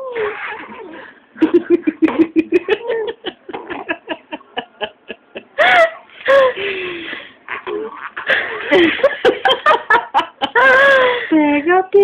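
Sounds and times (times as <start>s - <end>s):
baby squealing: 0.0s - 1.0s.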